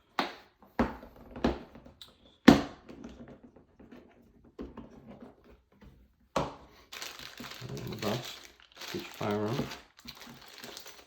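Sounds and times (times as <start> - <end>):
small clicks and rattles: 7.0 - 11.0.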